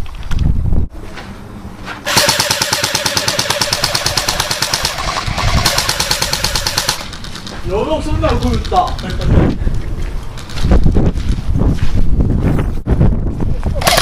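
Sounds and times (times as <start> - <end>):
airsoft gun full-auto rattle: 2.1 - 9.3.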